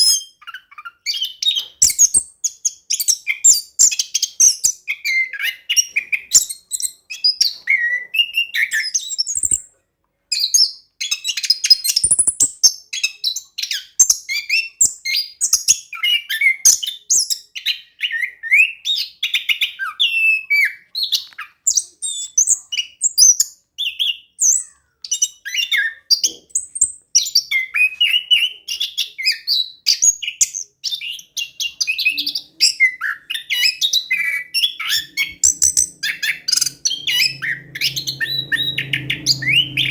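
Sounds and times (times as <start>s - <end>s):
thrush singing: 34.5s - 39.9s.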